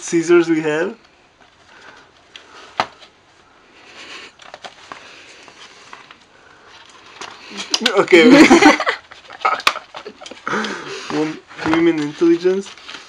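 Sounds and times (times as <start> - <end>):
plastic crinkling: 4.2 - 13.0.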